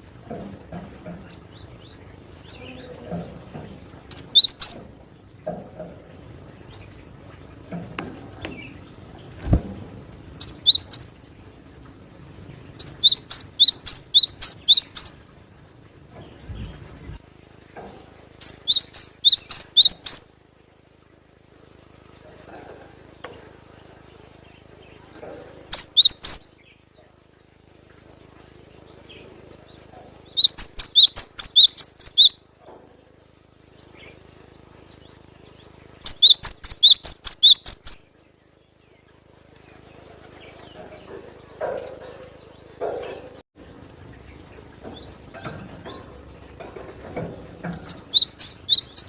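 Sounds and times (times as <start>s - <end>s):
faint bird chirps: 4.1s - 4.8s, 10.4s - 11.1s, 12.8s - 15.2s, 18.4s - 20.3s, 25.7s - 26.8s, 29.1s - 32.4s, 33.9s - 39.0s, 47.8s - 49.0s
bird calling sharp high notes: 36.1s - 38.0s.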